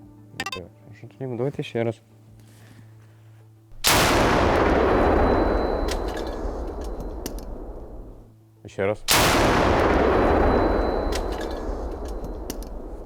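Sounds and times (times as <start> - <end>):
gun firing boom: 3.8 - 8.3, 9.1 - 13.0.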